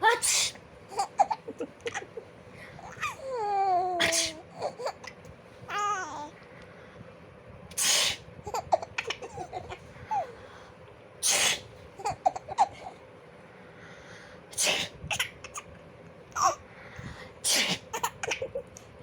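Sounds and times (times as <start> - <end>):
person sneezing: 0.1 - 0.6, 4.0 - 4.5, 11.2 - 11.7, 17.4 - 17.9
baby giggling: 0.9 - 6.3, 8.5 - 10.3.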